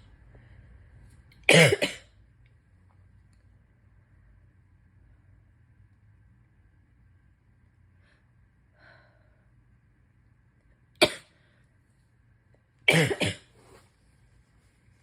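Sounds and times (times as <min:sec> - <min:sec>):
person coughing: 0:01.5 - 0:02.0, 0:11.0 - 0:11.2, 0:12.9 - 0:13.5.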